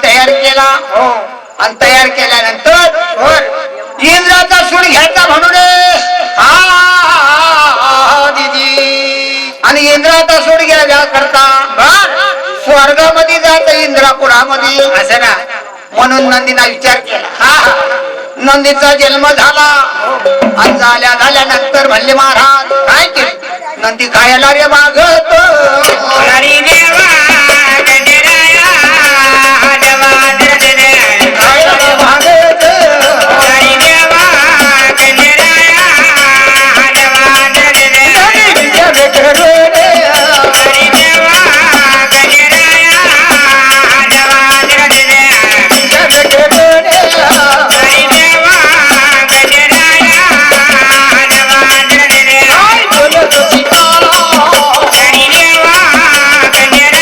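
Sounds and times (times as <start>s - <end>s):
jingling rattling percussion: 0.0s - 57.0s
person singing in a wavering voice: 2.8s - 16.0s, 16.8s - 57.0s.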